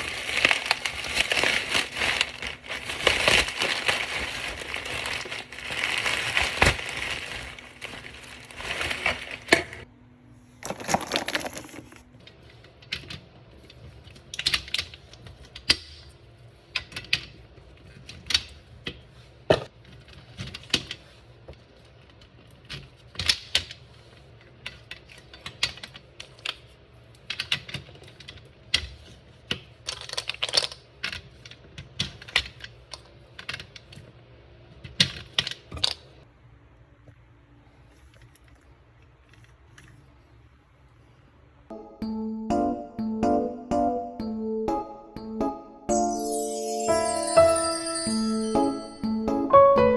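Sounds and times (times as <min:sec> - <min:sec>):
crinkling: 0:00.0 - 0:09.8.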